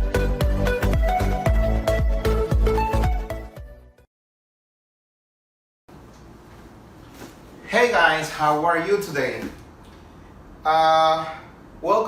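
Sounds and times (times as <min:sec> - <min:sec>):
music with fast beat and bass: 0:00.0 - 0:03.8.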